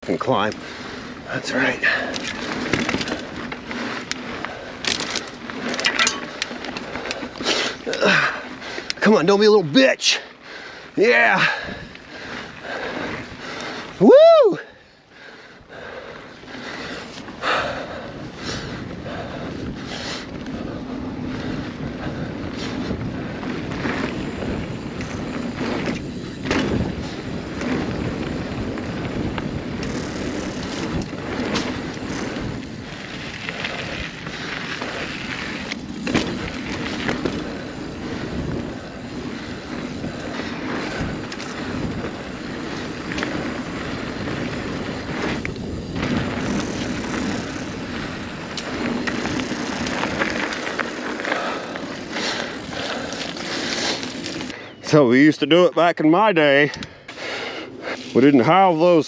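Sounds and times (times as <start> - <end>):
bike knocking and rattling: 0.0 - 9.9, 14.7 - 54.6
bike tyres rolling on dirt: 0.0 - 59.0.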